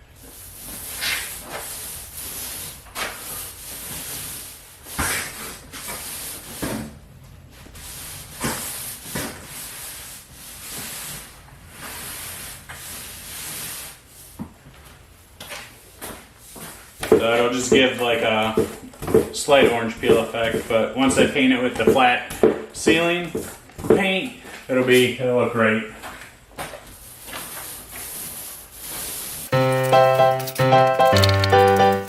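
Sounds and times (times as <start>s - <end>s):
paint roller wet hiss: 0.2s - 6.6s, 27.2s - 29.5s.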